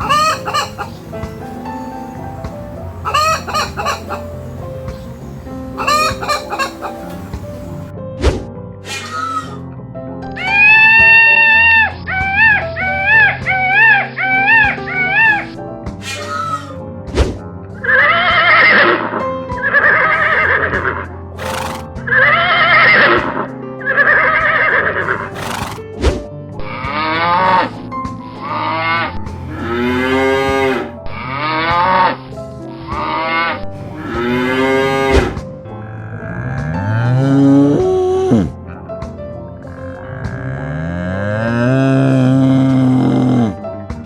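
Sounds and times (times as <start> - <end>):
loud animal calls: 0.0 - 7.9, 8.8 - 9.6, 16.0 - 16.8, 21.4 - 23.0, 25.3 - 25.9, 29.0 - 31.7, 33.2 - 38.5
background music: 0.0 - 44.0.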